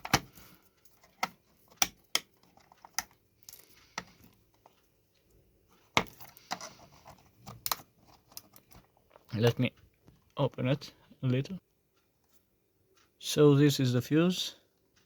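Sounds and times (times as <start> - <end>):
clicks and taps of handling: 0.0 - 10.7.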